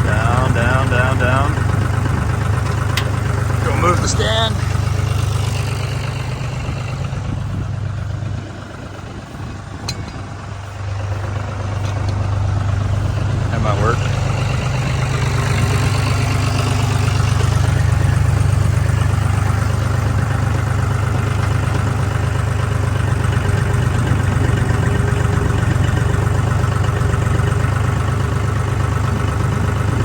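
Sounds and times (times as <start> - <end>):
engine idling: 0.0 - 30.0.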